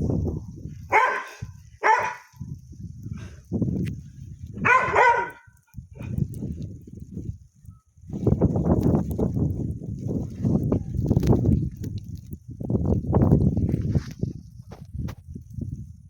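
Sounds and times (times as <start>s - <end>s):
wind buffeting microphone: 0.0s - 16.0s
dog barking: 0.9s - 2.4s, 4.6s - 6.1s.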